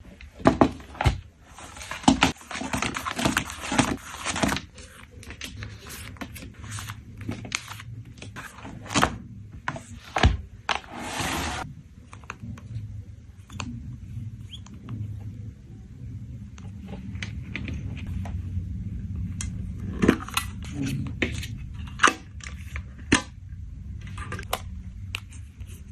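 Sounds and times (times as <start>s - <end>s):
plastic crinkling and rustling: 1.0s - 9.0s.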